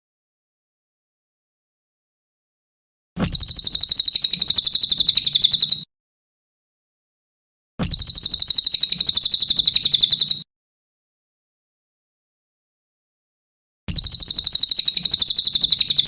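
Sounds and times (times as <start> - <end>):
bird song buzzy trill: 3.2 - 5.9, 7.8 - 10.5, 13.9 - 16.0.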